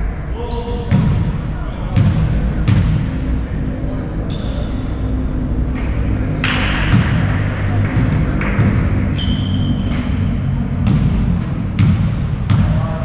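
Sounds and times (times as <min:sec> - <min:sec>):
low hubbub in a hall: 0:00.0 - 0:13.0
sneakers squeaking: 0:00.3 - 0:03.3, 0:04.0 - 0:13.0
basketball bouncing on court: 0:00.9 - 0:01.4, 0:02.0 - 0:03.1, 0:06.0 - 0:13.0.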